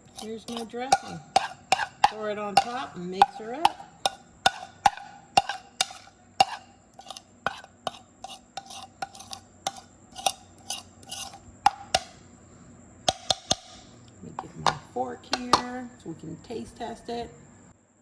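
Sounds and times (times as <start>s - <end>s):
utensil clinking against bowl: 0.0s - 12.0s.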